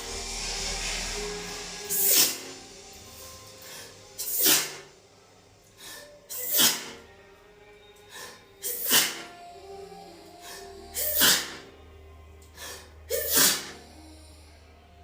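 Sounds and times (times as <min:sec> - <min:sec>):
woman sneezing: 0:06.3 - 0:07.0, 0:08.6 - 0:09.3, 0:11.0 - 0:11.6, 0:13.1 - 0:13.8.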